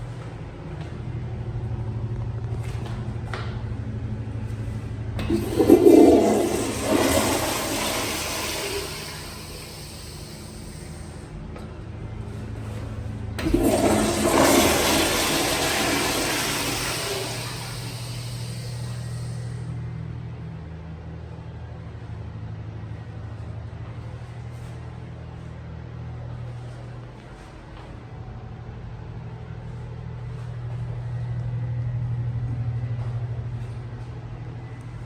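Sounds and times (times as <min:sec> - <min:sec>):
steady low hum: 0:00.0 - 0:35.0
toilet flushing: 0:04.6 - 0:11.3, 0:12.6 - 0:19.7.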